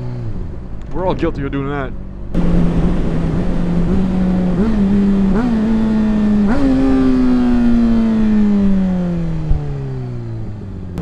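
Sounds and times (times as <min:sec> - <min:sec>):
wind noise: 0:02.3 - 0:09.8
motorcycle engine downshifting: 0:02.3 - 0:11.0.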